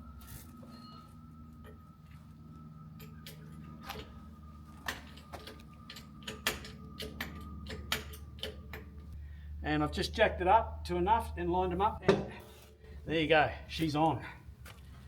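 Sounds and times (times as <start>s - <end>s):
metallic clicks and knocks of wheel fitting: 4.8s - 9.1s.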